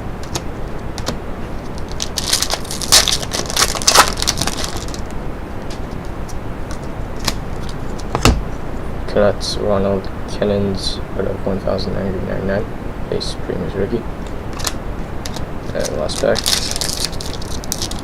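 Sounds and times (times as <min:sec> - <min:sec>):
wrapper tearing and crinkling: 0:01.7 - 0:05.1, 0:14.6 - 0:18.0.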